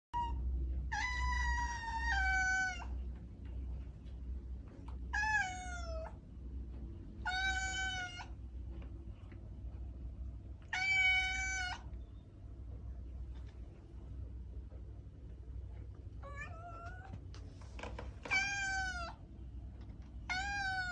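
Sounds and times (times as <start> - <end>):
cat yowling: 0.2 - 3.0, 5.1 - 6.2, 7.2 - 8.3, 10.7 - 11.9, 18.3 - 19.2, 20.3 - 20.9
steady low hum: 0.2 - 20.9.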